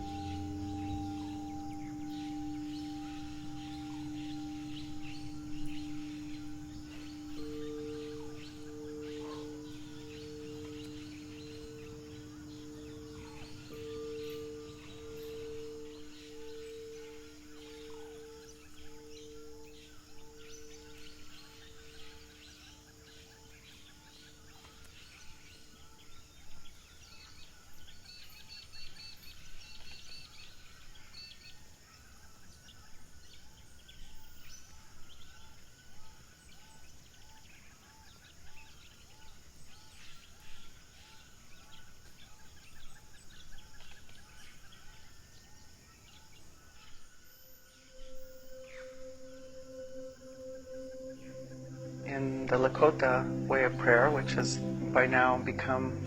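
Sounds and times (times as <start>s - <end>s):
singing bowl ringing: 0.0s - 31.3s, 46.1s - 56.0s
birds calling and chirping: 0.0s - 56.0s.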